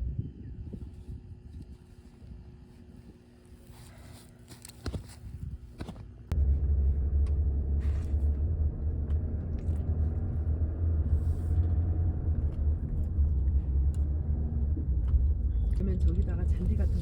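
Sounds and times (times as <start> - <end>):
car engine and road noise: 6.3 - 17.0.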